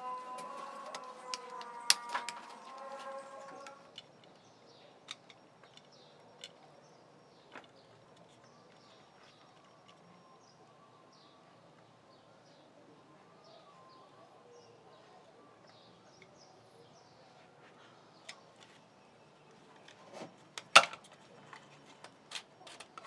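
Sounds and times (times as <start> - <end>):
sharp clicks: 0.0 - 3.8
low background noise: 0.0 - 23.0.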